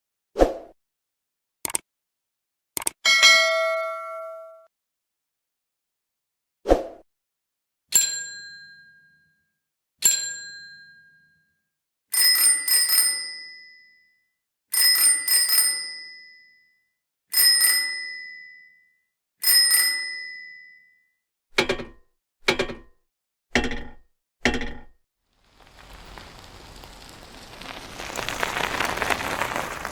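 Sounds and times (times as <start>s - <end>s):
bicycle bell ringing: 12.1s - 14.1s, 14.7s - 16.7s, 17.3s - 18.8s, 19.4s - 21.0s.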